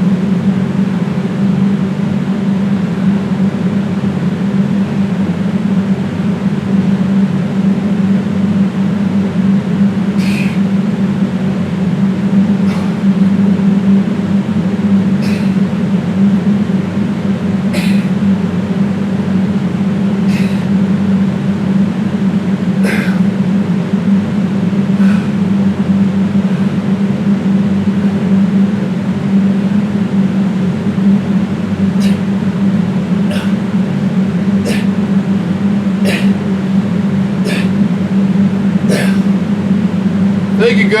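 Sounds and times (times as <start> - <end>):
loud buzzy low hum: 0.0 - 41.0
sharp breaths: 10.1 - 10.7, 12.6 - 13.2, 15.2 - 15.7, 17.7 - 18.2, 20.2 - 20.8, 24.9 - 25.5.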